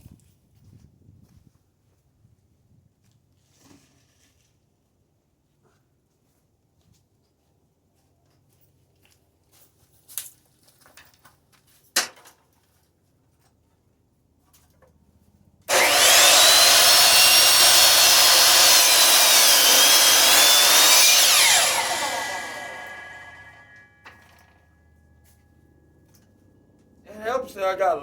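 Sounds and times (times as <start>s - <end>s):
miter saw whining: 15.7s - 24.3s.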